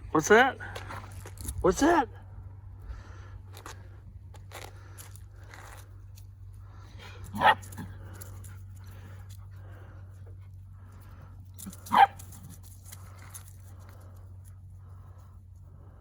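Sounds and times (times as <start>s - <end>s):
low hum: 0.0s - 16.0s
dog barking: 7.3s - 7.9s, 11.8s - 12.2s.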